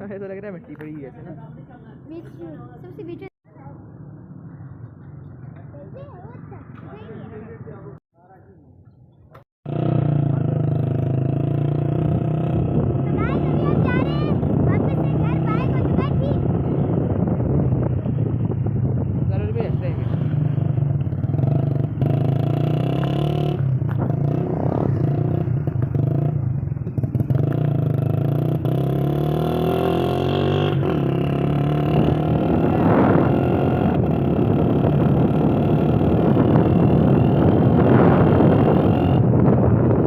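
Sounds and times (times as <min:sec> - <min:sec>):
motorcycle engine running: 0:09.6 - 0:40.0.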